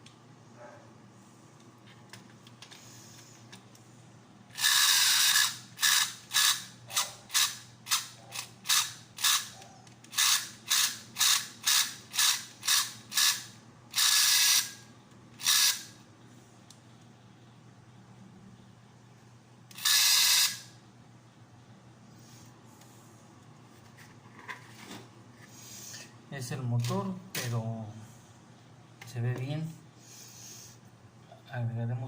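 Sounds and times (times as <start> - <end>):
toy motor and gears rattling: 4.5 - 14.8, 15.4 - 15.9, 19.7 - 20.7.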